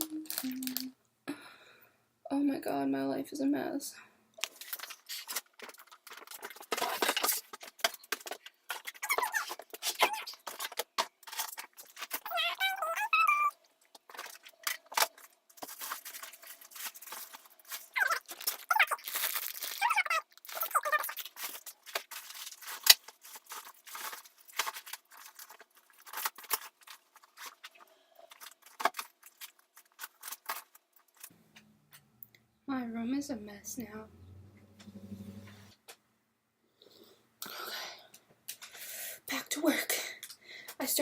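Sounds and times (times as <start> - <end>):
small objects clattering: 0.2 - 0.9, 4.4 - 31.3
short squeaky sounds: 12.2 - 13.6.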